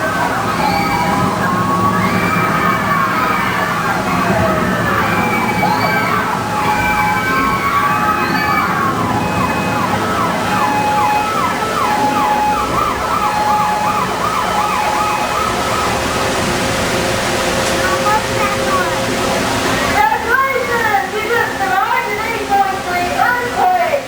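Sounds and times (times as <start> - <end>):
steady rushing background: 0.0 - 23.9
emergency sirens wailing and yelping: 0.0 - 24.0.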